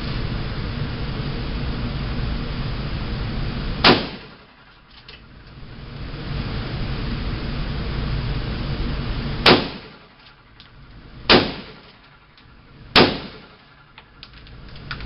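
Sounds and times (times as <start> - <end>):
steady rushing noise: 0.0 - 15.0
gunshots with ringing echo: 3.8 - 4.4, 9.4 - 10.0, 11.3 - 11.9, 12.9 - 13.7.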